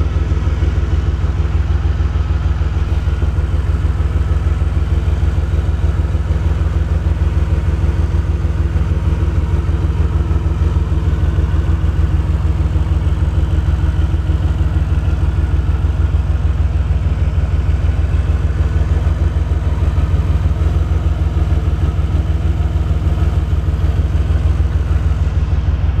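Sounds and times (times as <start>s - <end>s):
car engine rough idling: 0.0s - 26.0s.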